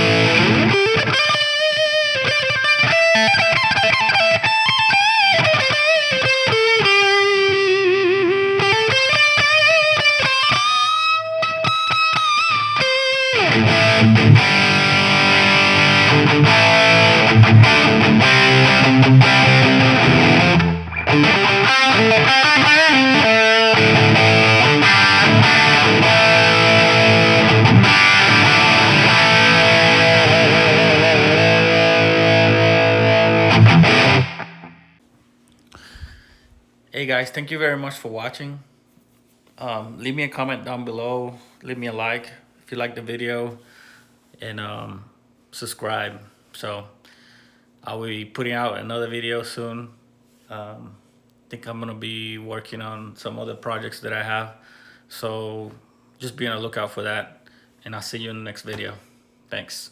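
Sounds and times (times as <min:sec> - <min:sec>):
distorted electric guitar: 0:00.0 - 0:35.0.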